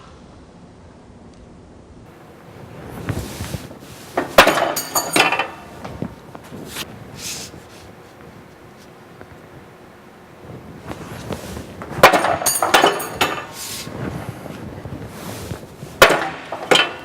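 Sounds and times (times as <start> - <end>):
sheet metal sliding and scraping: 2.6 - 5.9, 10.9 - 17.0
sharp metallic clank: 4.2 - 5.8, 12.0 - 13.6
light metal clinks: 4.6 - 5.7, 12.4 - 13.4.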